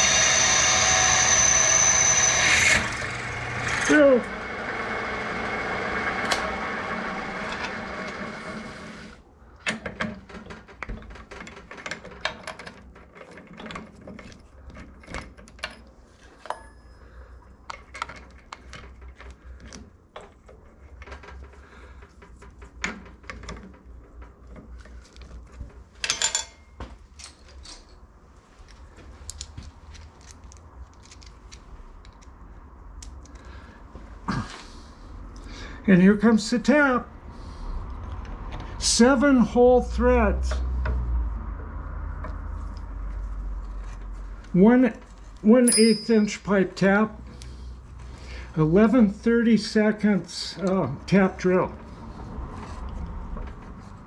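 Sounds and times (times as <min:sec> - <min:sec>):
drill press motor running: 0:00.0 - 0:09.2
metallic clicks and knocks of tools: 0:22.2 - 0:28.0.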